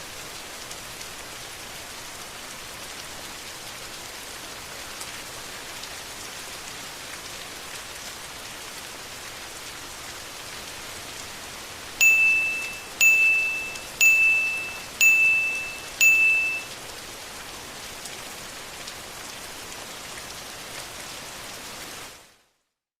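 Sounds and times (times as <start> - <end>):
steady rain: 0.0 - 22.7
timer alarm beeps: 12.0 - 16.7.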